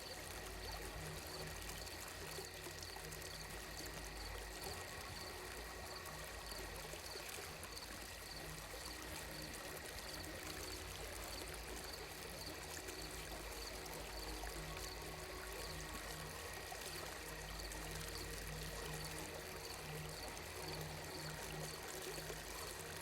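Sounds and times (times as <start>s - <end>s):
running water: 0.0s - 23.0s.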